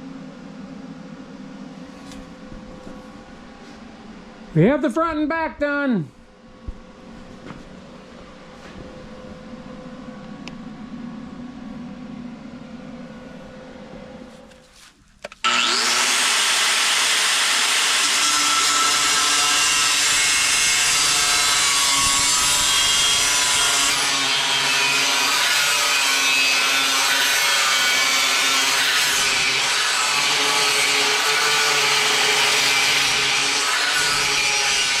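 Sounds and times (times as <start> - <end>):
power grinder cutting steel: 15.4 - 35.0.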